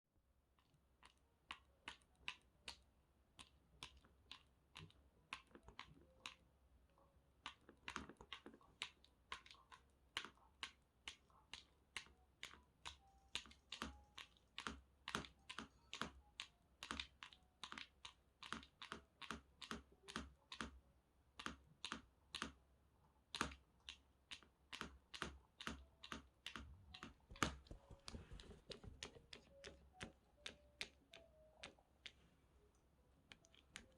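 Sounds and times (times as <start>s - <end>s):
cat paws tapping: 23.4s - 32.2s.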